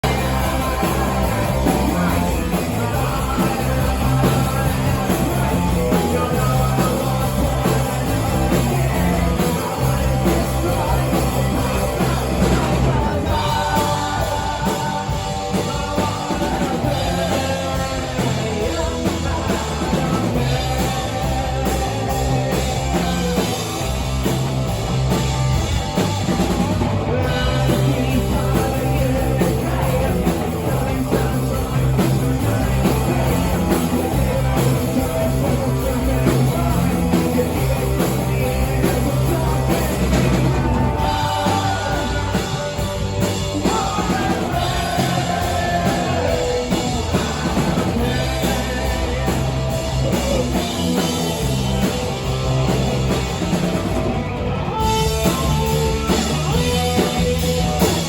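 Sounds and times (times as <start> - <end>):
person singing: 0.0 - 24.3, 26.8 - 52.8
punk rock band playing: 0.0 - 58.0.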